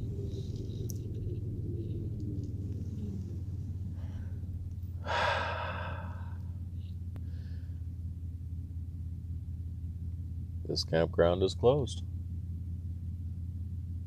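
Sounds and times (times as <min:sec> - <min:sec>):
van engine and road noise: 0:00.0 - 0:14.0
person breathing out: 0:03.9 - 0:06.5.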